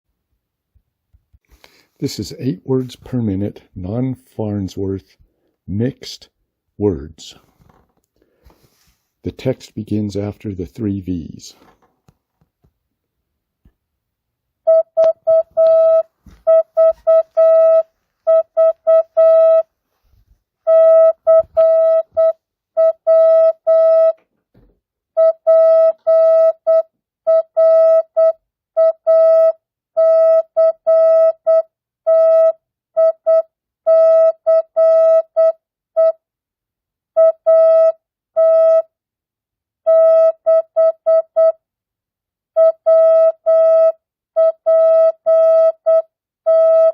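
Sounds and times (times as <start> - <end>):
morse code beeps: 14.7 - 19.7, 20.7 - 24.2, 25.2 - 36.2, 37.2 - 38.9, 39.9 - 41.6, 42.6 - 46.9.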